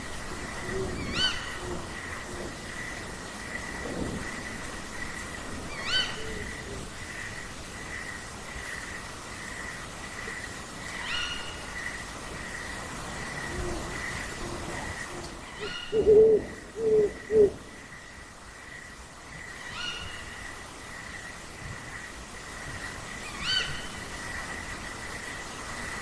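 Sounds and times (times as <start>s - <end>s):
owls hooting: 15.6s - 17.6s.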